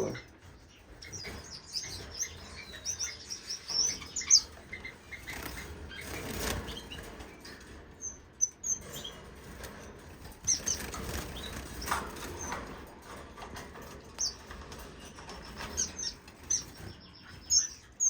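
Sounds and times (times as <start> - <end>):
finches fluttering wings: 3.8 - 7.2, 10.4 - 12.7.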